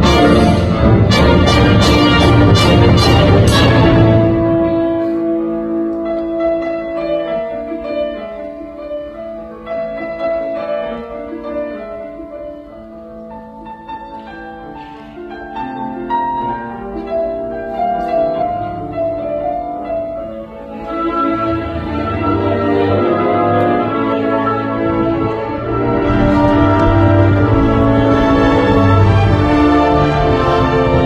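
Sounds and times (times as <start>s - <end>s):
symphony orchestra playing: 0.0s - 31.0s.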